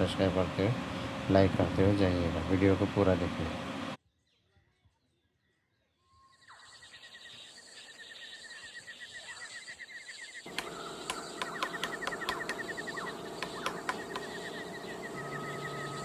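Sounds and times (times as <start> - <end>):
high chirps: 10.5 - 16.0
sharp ticks: 10.5 - 16.0.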